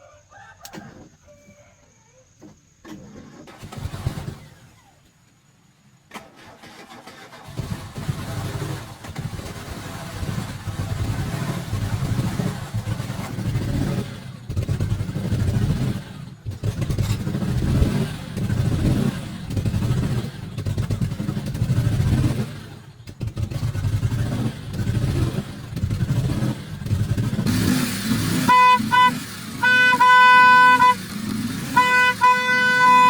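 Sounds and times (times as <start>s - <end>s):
engine revving: 3.5s - 4.7s, 6.6s - 33.0s
car horn beeps: 28.4s - 33.0s.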